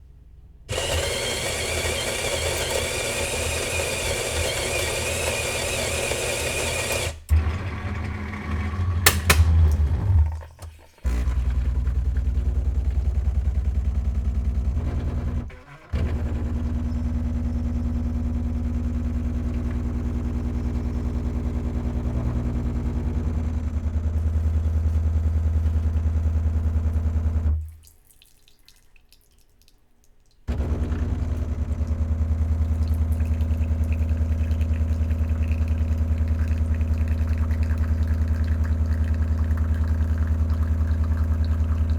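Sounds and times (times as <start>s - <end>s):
coffee machine clicking and clunking: 0.7s - 13.0s
coffee machine grinding beans: 0.7s - 27.5s, 30.5s - 41.9s
pump humming: 0.7s - 27.7s, 30.5s - 41.9s.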